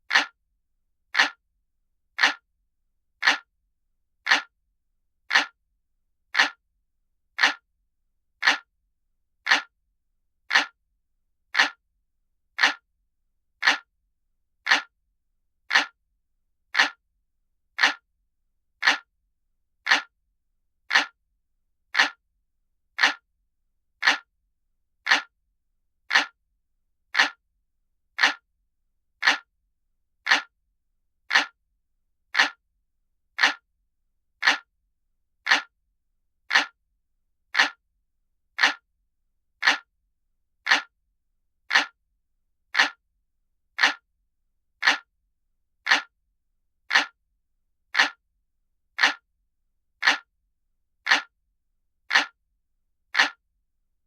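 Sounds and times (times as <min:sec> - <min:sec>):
mechanical clock ticking: 0:00.1 - 0:00.4, 0:01.2 - 0:01.4, 0:02.2 - 0:02.4, 0:03.2 - 0:03.5, 0:04.3 - 0:04.5, 0:05.3 - 0:05.6, 0:06.4 - 0:06.6, 0:07.4 - 0:07.6, 0:08.4 - 0:08.7, 0:09.4 - 0:09.7, 0:10.5 - 0:10.8, 0:11.5 - 0:11.8, 0:12.6 - 0:12.8, 0:13.6 - 0:13.9, 0:14.6 - 0:14.9, 0:15.7 - 0:16.0, 0:16.7 - 0:17.0, 0:17.8 - 0:18.0, 0:18.8 - 0:19.1, 0:19.8 - 0:20.1, 0:20.9 - 0:21.2, 0:21.9 - 0:22.2, 0:23.0 - 0:23.2, 0:24.0 - 0:24.3, 0:25.0 - 0:25.3, 0:26.1 - 0:26.4, 0:27.2 - 0:27.4, 0:28.2 - 0:28.4, 0:29.2 - 0:29.5, 0:30.2 - 0:30.5, 0:31.3 - 0:31.6, 0:32.3 - 0:32.6, 0:33.4 - 0:33.6, 0:34.4 - 0:34.7, 0:35.4 - 0:35.7, 0:36.5 - 0:36.8, 0:37.5 - 0:37.8, 0:38.6 - 0:38.8, 0:39.6 - 0:39.9, 0:40.6 - 0:40.9, 0:41.7 - 0:42.0, 0:42.7 - 0:43.0, 0:43.8 - 0:44.0, 0:44.8 - 0:45.1, 0:45.8 - 0:46.1, 0:46.9 - 0:47.2, 0:47.9 - 0:48.2, 0:49.0 - 0:49.2, 0:50.0 - 0:50.3, 0:51.0 - 0:51.3, 0:52.1 - 0:52.4, 0:53.1 - 0:53.4.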